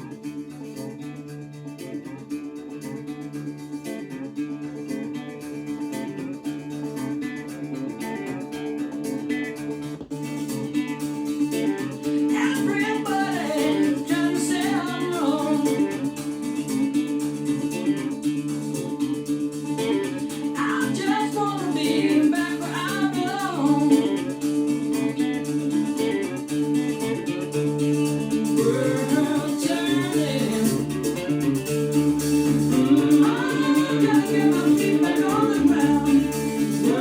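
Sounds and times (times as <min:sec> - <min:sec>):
plucked guitar: 0:00.0 - 0:37.0
person singing: 0:10.3 - 0:37.0.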